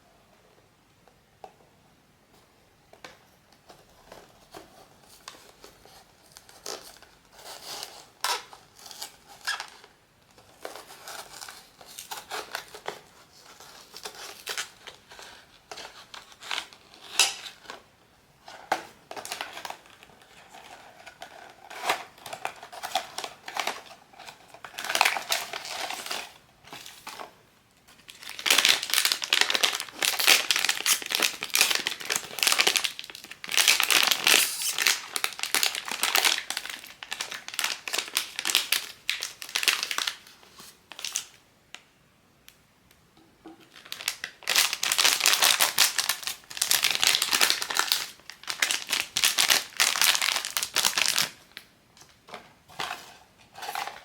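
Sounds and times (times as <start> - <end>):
plastic wrapper crinkling: 18.7 - 27.3, 27.9 - 41.4, 43.6 - 52.2.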